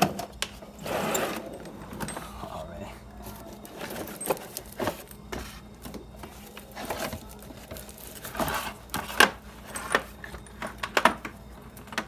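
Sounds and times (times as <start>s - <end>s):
objects knocking and clicking: 3.6s - 12.0s.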